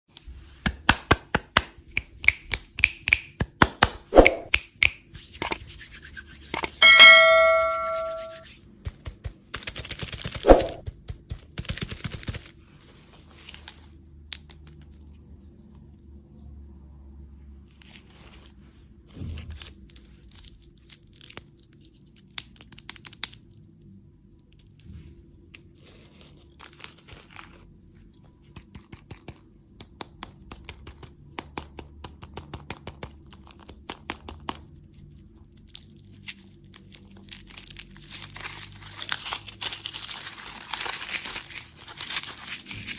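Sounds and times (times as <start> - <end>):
sharp snap: 2.0 - 5.6
packaging crinkling and tearing: 11.4 - 15.2, 19.3 - 23.8, 24.4 - 28.3, 34.4 - 42.9.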